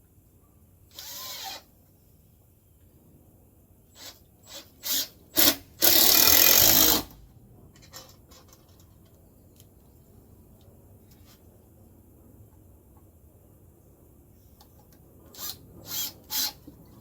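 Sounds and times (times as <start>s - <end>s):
power drill driving screw into wood: 0.9s - 1.7s, 4.0s - 7.2s, 15.4s - 16.6s.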